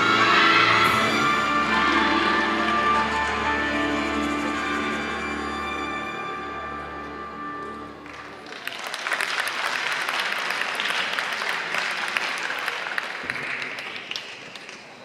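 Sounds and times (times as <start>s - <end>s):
floor routine music: 0.0s - 8.6s
audience clapping: 8.0s - 15.0s.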